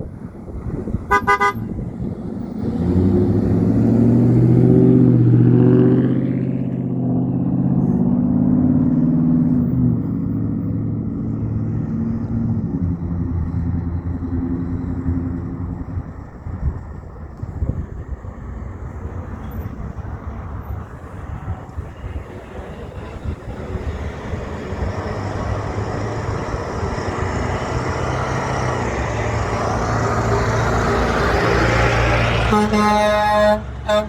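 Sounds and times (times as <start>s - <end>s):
steady road noise: 0.0s - 34.0s
truck engine passing: 0.0s - 34.0s
horn toot: 1.1s - 1.8s, 32.4s - 34.0s.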